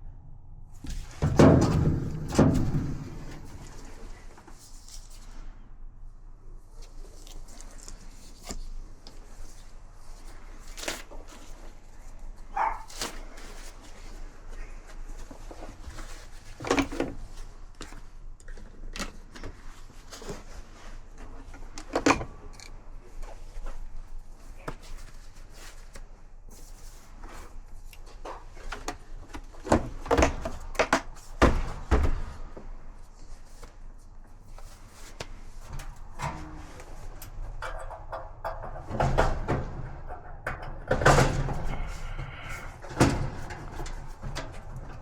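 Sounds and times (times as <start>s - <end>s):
clunks of dryer parts handled: 0.8s - 4.5s, 28.2s - 32.8s, 34.7s - 45.0s.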